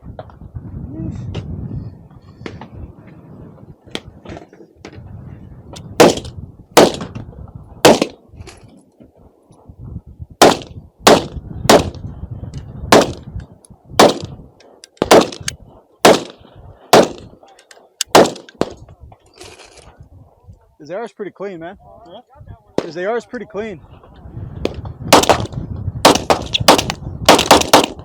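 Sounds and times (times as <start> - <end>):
fainter gunshots: 6.0 - 7.1, 7.8 - 8.1, 12.9 - 13.2, 14.0 - 14.3, 16.0 - 17.2, 18.1 - 18.7, 25.1 - 28.0
rifle gunshots: 6.0 - 7.2, 7.8 - 8.2, 10.4 - 12.0, 12.9 - 13.3, 14.0 - 14.4, 15.0 - 17.4, 18.0 - 18.8, 25.1 - 28.0.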